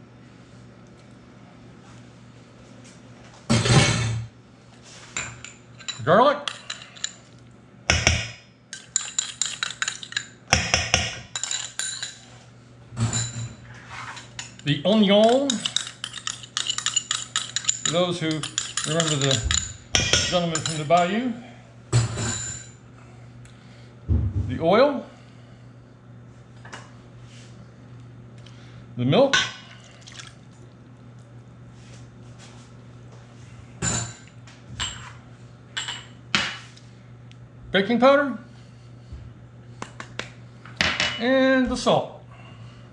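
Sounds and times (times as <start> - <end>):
steady low hum: 0.0 - 42.9
utensil clinking against dishes: 5.2 - 7.3, 7.9 - 12.3, 13.0 - 13.6, 14.2 - 21.2, 33.8 - 35.2, 35.8 - 36.6.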